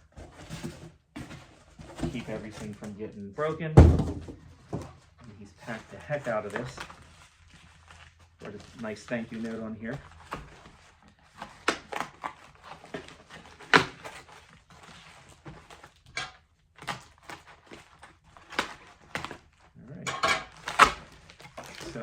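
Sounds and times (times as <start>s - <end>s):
packing rustling: 0.0s - 16.1s, 20.5s - 22.0s
packing scraping and knocking: 0.0s - 22.0s.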